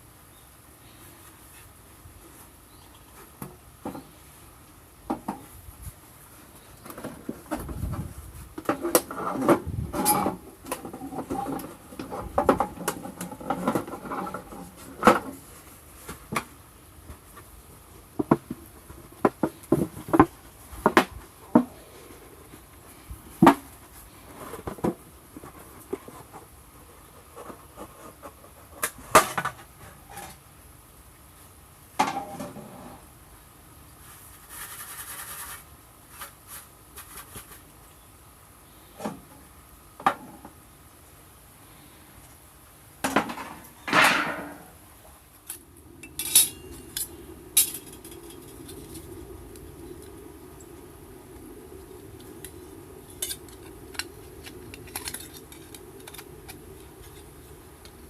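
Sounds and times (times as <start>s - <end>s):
knocks and clinks of handling: 46.0s - 49.0s.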